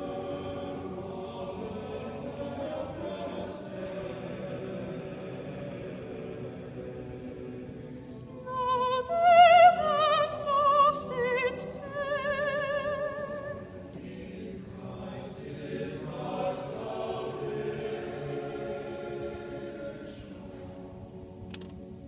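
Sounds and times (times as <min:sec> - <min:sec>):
choir singing softly: 0:00.0 - 0:22.0
soprano singing with vibrato: 0:08.3 - 0:20.5.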